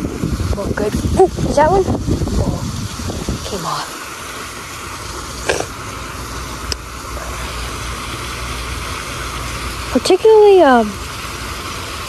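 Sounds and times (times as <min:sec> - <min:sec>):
low rumble: 0:00.0 - 0:03.9
water rushing over spillway: 0:00.0 - 0:12.0.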